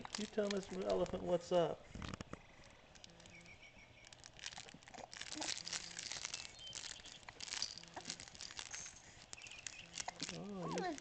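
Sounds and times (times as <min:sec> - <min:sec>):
crinkling and rustling: 0:00.0 - 0:11.0.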